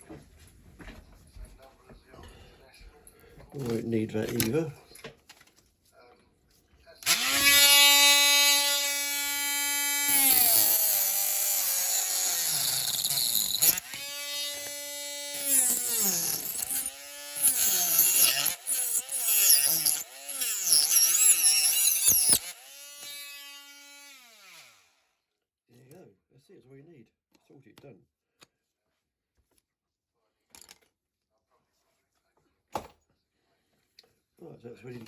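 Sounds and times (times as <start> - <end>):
power tool whining: 7.0 - 25.0.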